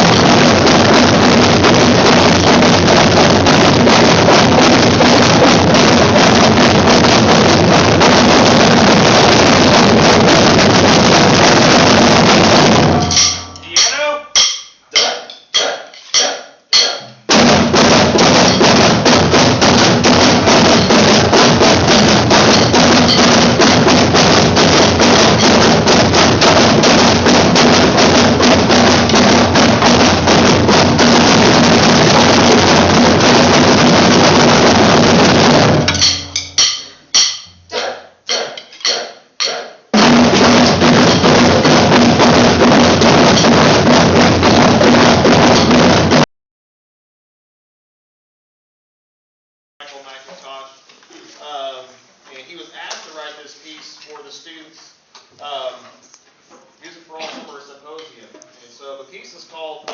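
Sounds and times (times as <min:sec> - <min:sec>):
snare and bass drums playing: 0:00.0 - 0:15.2, 0:16.1 - 0:46.3.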